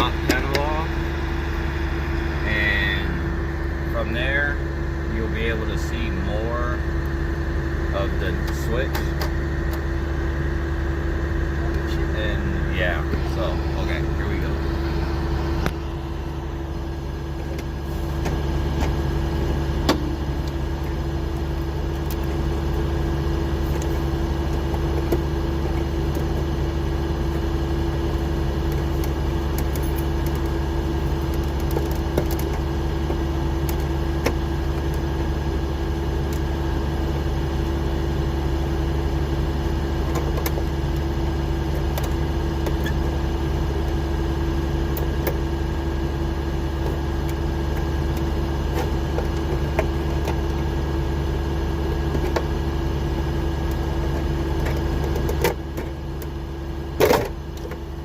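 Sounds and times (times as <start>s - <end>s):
truck engine idling: 0.0s - 58.0s.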